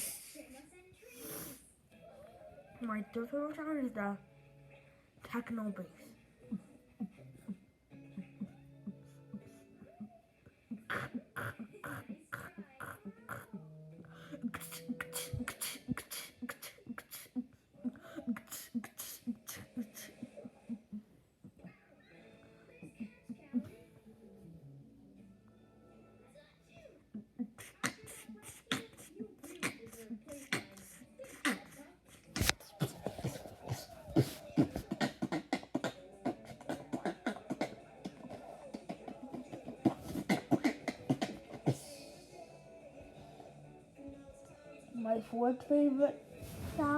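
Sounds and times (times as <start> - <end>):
boy beatboxing a bass beat: 8.2 - 13.6, 14.2 - 21.1, 27.4 - 42.2, 46.7 - 46.9.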